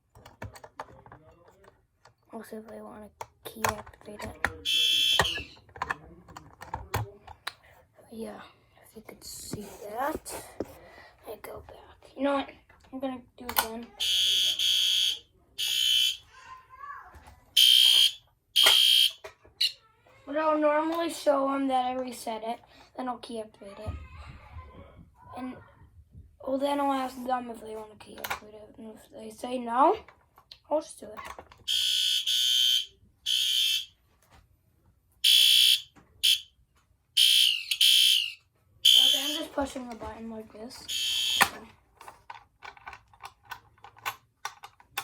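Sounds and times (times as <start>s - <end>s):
muffled fire alarm horn blasts: 4.7s - 5.4s, 14.0s - 16.2s, 17.6s - 19.7s, 31.7s - 34.0s, 35.2s - 36.5s, 37.2s - 39.4s, 40.9s - 41.5s.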